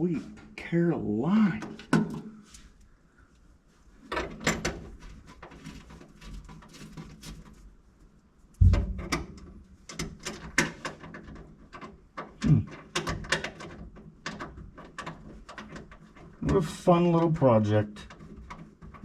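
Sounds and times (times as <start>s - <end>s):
heavy thump: 8.6s - 9.6s.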